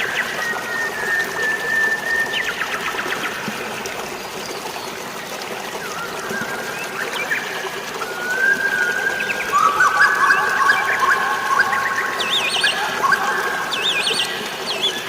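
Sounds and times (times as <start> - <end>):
running water: 0.0 - 15.0
birds chirping: 8.6 - 15.0.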